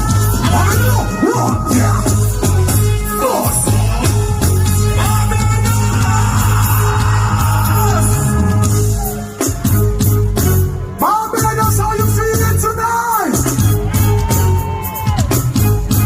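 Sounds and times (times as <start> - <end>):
person singing: 0.0 - 8.9
heavy bass line: 0.0 - 16.0
live band music: 0.0 - 16.0.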